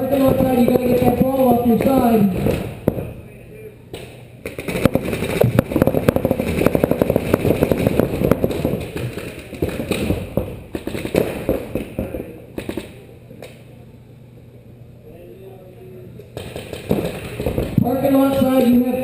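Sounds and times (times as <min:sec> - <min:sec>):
paintball guns firing: 0:00.0 - 0:03.2, 0:03.9 - 0:13.5, 0:16.4 - 0:19.0.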